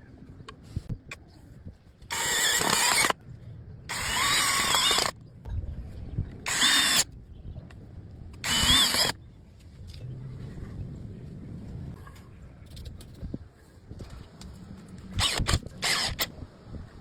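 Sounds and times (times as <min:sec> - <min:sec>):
power drill running: 0:02.1 - 0:03.2, 0:03.9 - 0:05.1, 0:06.5 - 0:07.0, 0:08.4 - 0:09.2, 0:15.2 - 0:16.3.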